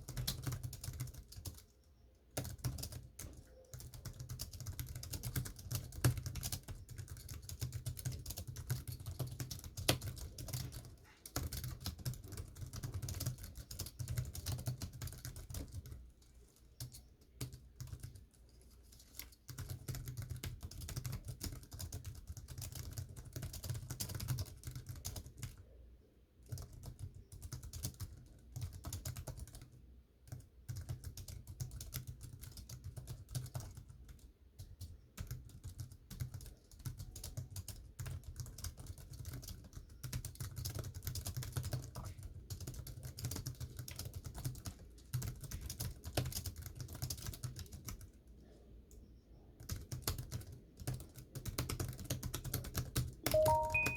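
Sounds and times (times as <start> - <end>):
computer keyboard typing: 0.0 - 25.7, 26.4 - 48.2, 49.6 - 53.9.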